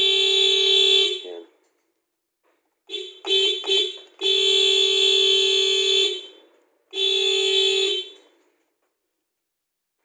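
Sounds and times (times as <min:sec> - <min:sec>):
car horn honking: 0:00.0 - 0:01.4, 0:02.9 - 0:08.3.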